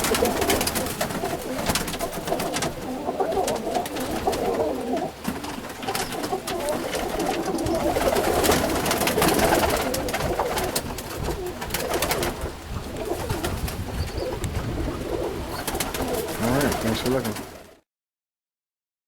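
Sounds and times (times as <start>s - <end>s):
pigeons cooing: 0.0s - 17.8s.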